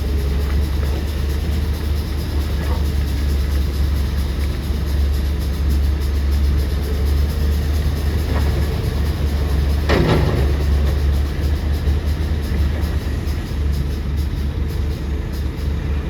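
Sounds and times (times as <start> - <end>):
excavator diesel engine droning: 0.0 - 16.0
machine clank: 8.2 - 12.8.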